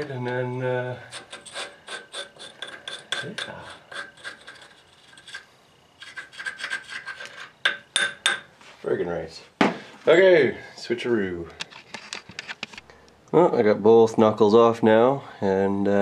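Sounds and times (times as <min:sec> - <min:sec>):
hand tool rasping on metal: 0:00.0 - 0:08.1.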